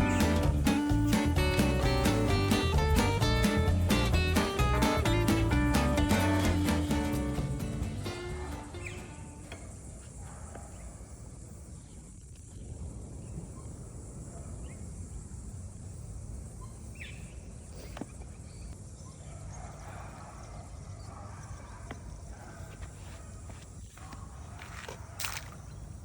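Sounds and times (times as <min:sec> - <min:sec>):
faint bird chirps: 0:16.5 - 0:19.6.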